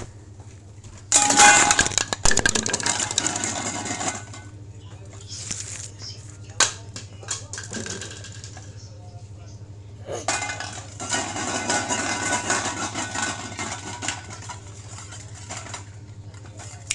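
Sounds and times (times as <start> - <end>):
low electrical hum: 0.0 - 16.9
small hard objects clattering: 1.1 - 4.3.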